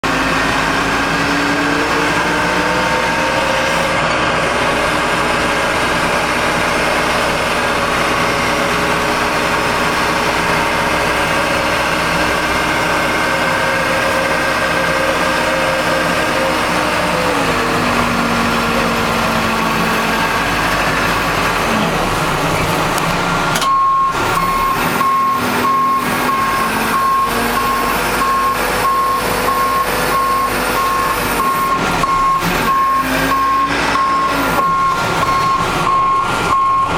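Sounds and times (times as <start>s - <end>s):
diesel engine under load: 0.0s - 36.9s
backup alarm beeping: 23.7s - 36.9s.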